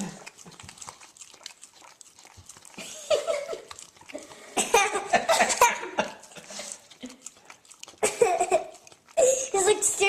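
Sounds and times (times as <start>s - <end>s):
people laughing: 4.8s - 6.2s.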